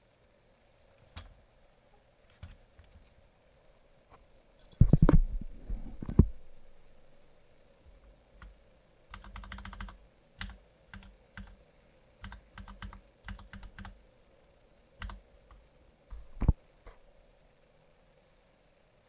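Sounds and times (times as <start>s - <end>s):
typing on mechanical keyboard: 9.1s - 11.6s, 12.2s - 14.0s, 15.0s - 15.2s.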